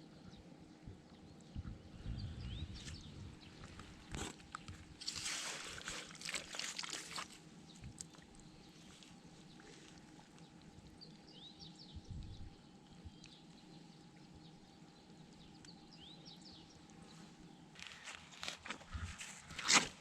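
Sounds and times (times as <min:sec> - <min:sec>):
squelching in wet mud: 0:04.1 - 0:10.4.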